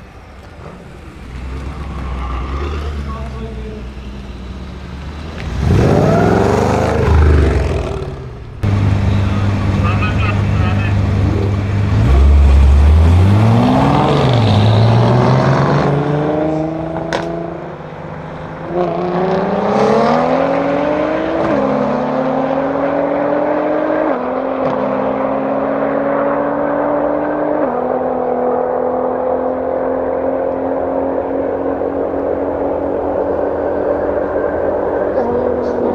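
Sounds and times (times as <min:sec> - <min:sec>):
car engine accelerating hard: 0:00.6 - 0:35.9
gear upshifts: 0:04.2 - 0:14.6
exhaust pop: 0:08.6 - 0:13.4.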